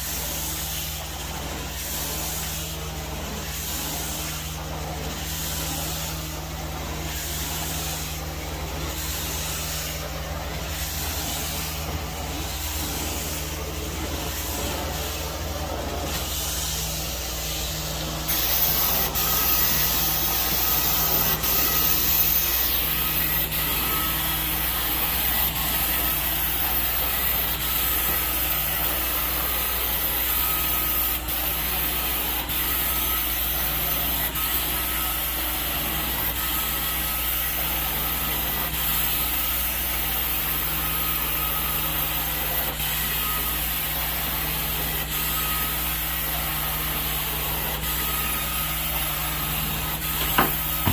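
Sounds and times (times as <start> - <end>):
extraction wand spraying and sucking: 0.0 - 50.9.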